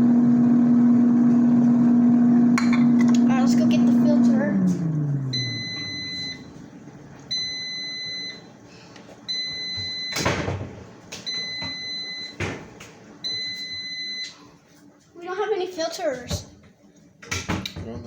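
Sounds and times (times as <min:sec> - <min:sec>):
electronic alarm beeping: 0:05.3 - 0:06.6, 0:07.3 - 0:08.5, 0:09.3 - 0:10.3, 0:11.3 - 0:12.4, 0:13.2 - 0:14.4.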